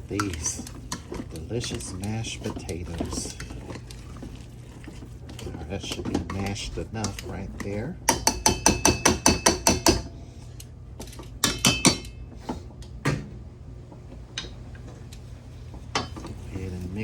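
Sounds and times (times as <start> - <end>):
utensil knocking on metal pot: 8.1 - 10.1, 11.4 - 12.1.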